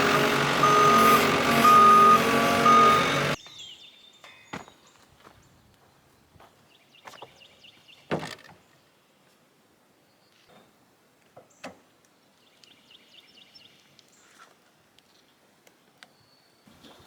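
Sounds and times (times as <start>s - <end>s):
high chirps: 0.0s - 3.4s.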